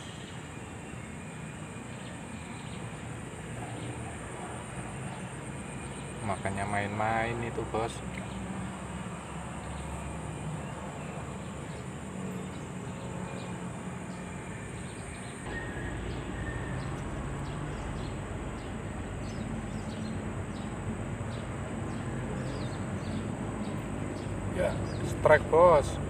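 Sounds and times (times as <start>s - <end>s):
distant road traffic rumble: 0.0s - 26.0s.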